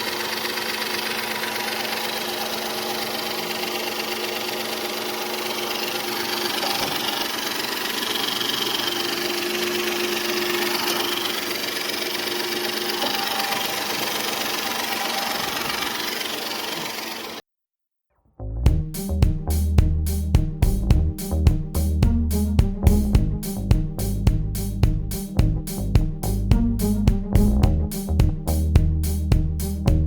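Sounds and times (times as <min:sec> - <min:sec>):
car engine running with ticking: 0:00.0 - 0:17.4.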